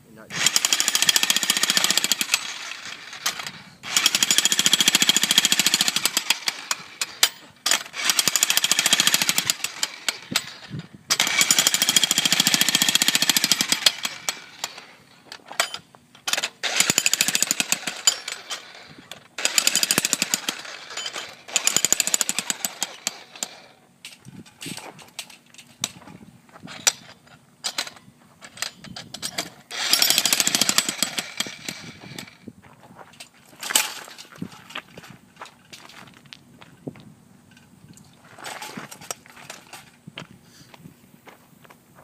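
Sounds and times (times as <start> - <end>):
jackhammer hammering concrete: 0.3 - 15.0, 16.3 - 23.8, 29.4 - 32.4.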